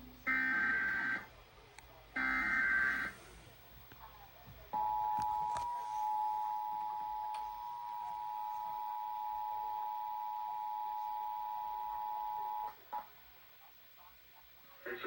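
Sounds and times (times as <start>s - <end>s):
emergency alert two-tone signal: 4.8s - 12.8s.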